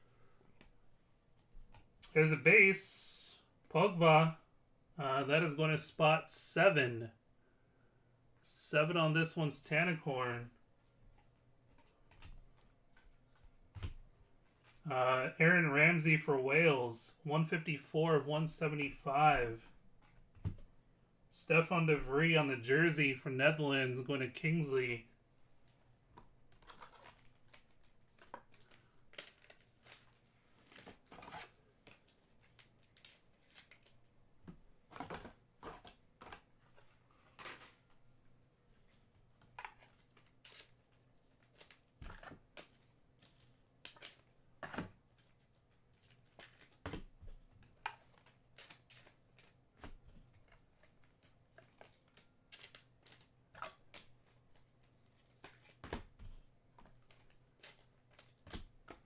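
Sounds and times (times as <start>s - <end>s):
wrappers tearing and rustling: 28.5s - 31.5s.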